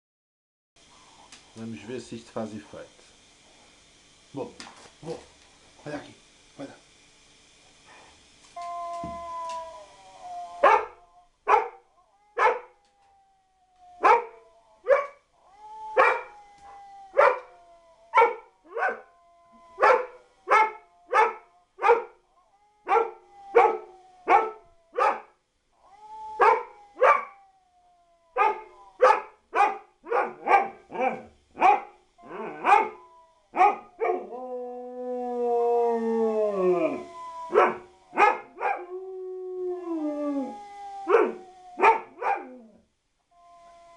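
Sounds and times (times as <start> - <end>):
dog howling: 8.6 - 43.9
dog barking: 10.6 - 10.9, 11.5 - 11.8, 19.8 - 22.1, 22.9 - 25.2, 28.4 - 30.8, 41.1 - 42.5.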